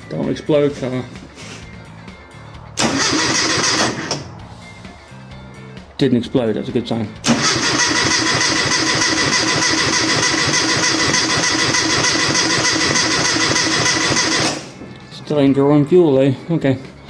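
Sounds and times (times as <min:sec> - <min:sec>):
engine cranking on starter: 0:02.8 - 0:04.4, 0:07.2 - 0:14.8.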